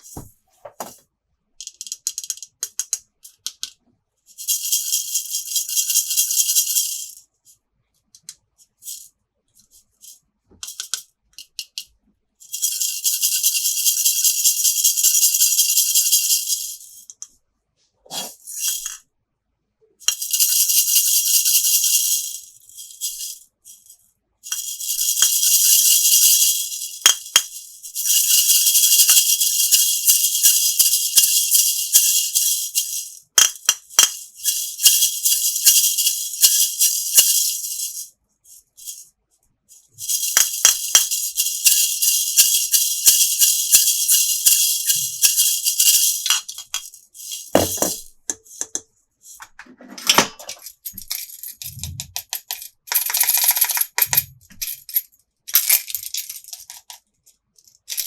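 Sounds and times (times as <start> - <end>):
plastic toy pieces rattling: 1.6 - 3.8, 9.9 - 17.3, 18.4 - 19.0, 20.1 - 39.0, 39.8 - 49.4, 50.4 - 58.0.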